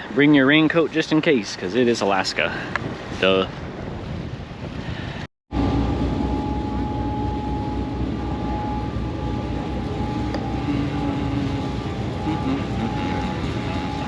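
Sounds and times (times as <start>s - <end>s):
wind: 0.0s - 14.0s
boat engine droning: 5.5s - 14.0s.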